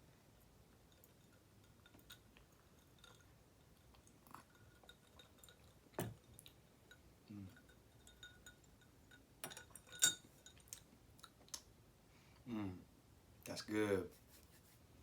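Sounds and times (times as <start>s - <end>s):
ice clinking in a glass: 4.4s - 10.7s.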